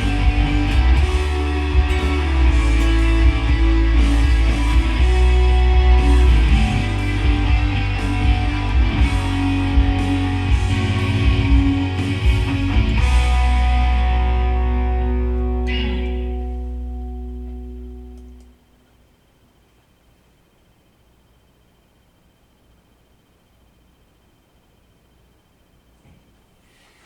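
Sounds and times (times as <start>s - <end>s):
rock music with electric guitar: 0.0s - 18.4s.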